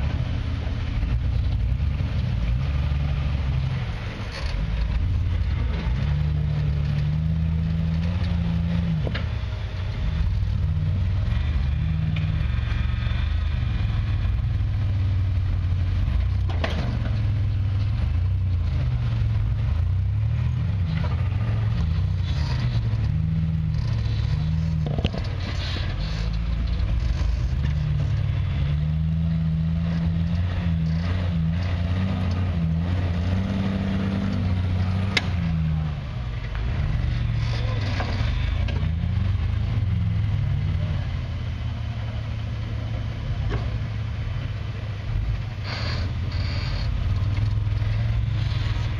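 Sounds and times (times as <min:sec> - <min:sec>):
vehicle engine revving: 0:00.0 - 0:48.9.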